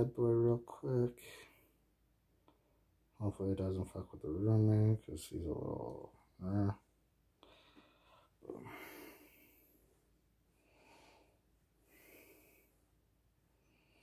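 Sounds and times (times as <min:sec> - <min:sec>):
soft breathy puffs of breath: 0:07.4 - 0:14.0.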